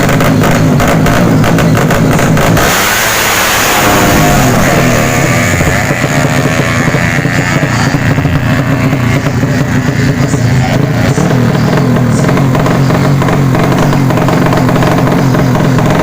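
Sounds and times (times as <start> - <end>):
high engine whine: 0.0 - 16.0
motorcycle engines running loud: 0.0 - 16.0.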